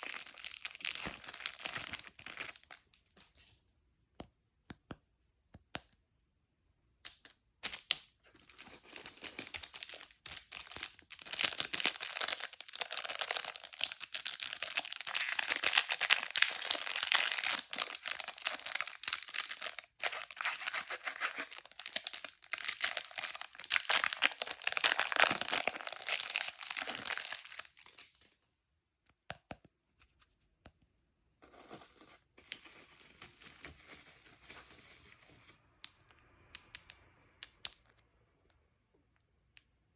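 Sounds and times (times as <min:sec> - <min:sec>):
plastic wrapper crinkling: 0:00.0 - 0:02.9, 0:08.5 - 0:28.3.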